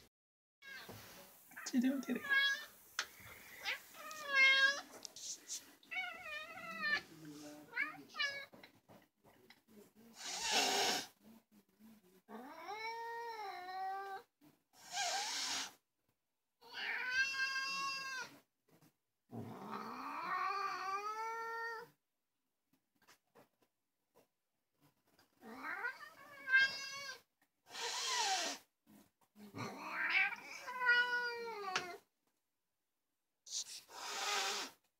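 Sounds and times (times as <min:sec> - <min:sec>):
cat meowing: 0:02.2 - 0:02.7, 0:03.6 - 0:04.9, 0:05.9 - 0:07.1, 0:16.6 - 0:18.4, 0:25.4 - 0:27.2, 0:29.8 - 0:32.0
cat raspy cry: 0:03.6 - 0:04.9, 0:16.6 - 0:18.3, 0:25.4 - 0:28.6, 0:29.6 - 0:32.0.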